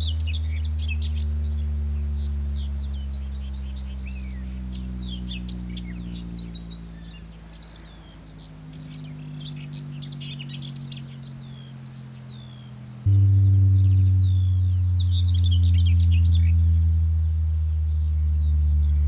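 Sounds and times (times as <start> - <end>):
birds chirping and singing: 0.0 - 19.0
bass music from speaker: 13.0 - 19.0.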